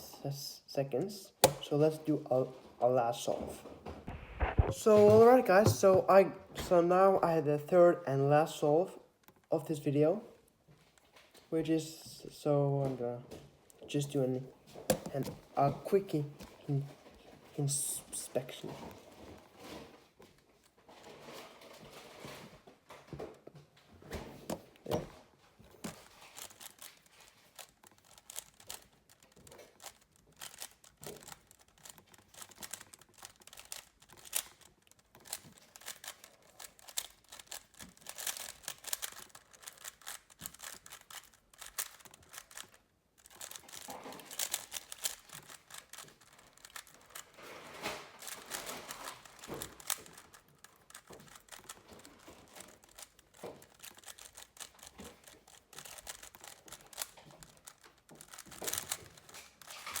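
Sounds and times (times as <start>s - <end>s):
puzzle cube clacking: 1.4s - 2.3s, 3.1s - 7.7s, 13.7s - 19.6s, 24.3s - 60.0s.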